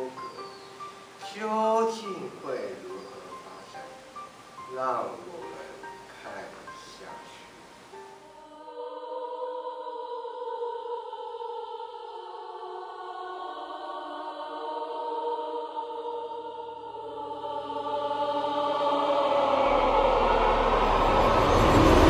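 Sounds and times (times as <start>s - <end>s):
choir-like voices music: 0.0s - 22.0s
eerie suspenseful music: 18.4s - 22.0s.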